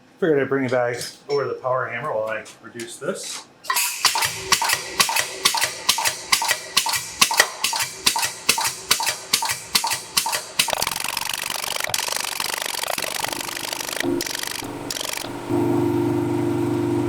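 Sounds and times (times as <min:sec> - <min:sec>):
power hammer striking steel: 0:03.7 - 0:12.1.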